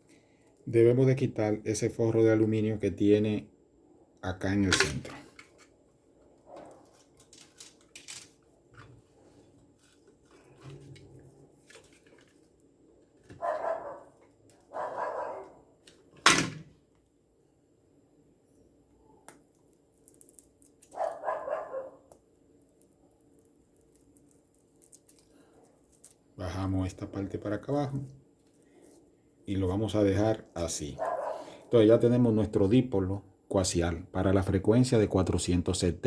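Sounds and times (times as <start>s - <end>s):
cable being handled: 5.3s - 13.6s, 23.4s - 26.3s
dog barking: 13.4s - 15.6s, 20.9s - 22.1s, 31.0s - 31.6s.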